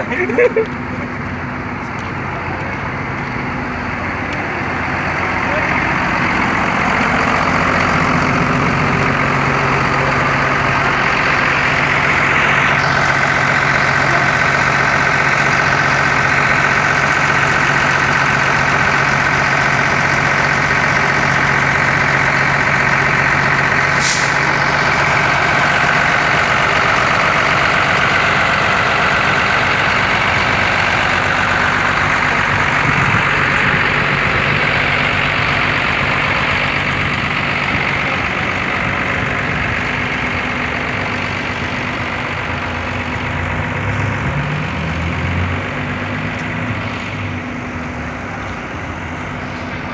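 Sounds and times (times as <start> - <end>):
bus diesel engine running: 0.0 - 49.9
short high hiss: 23.9 - 24.6.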